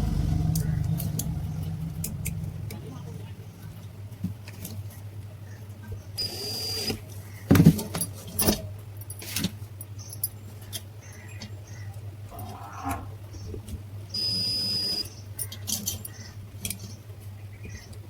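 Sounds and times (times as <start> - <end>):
steady low hum: 0.0 - 4.8.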